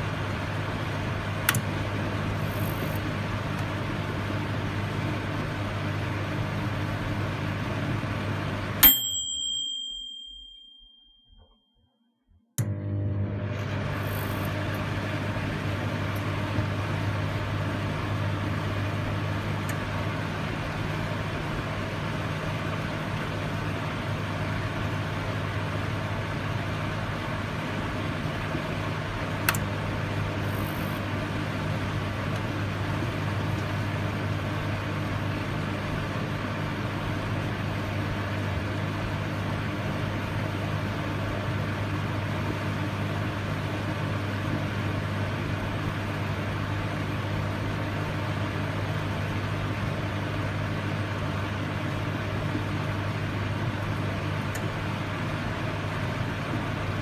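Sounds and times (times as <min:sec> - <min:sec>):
microwave oven humming: 0:00.0 - 0:11.0, 0:12.6 - 0:57.0
microwave click: 0:01.4 - 0:01.8, 0:12.6 - 0:14.9, 0:29.4 - 0:29.7.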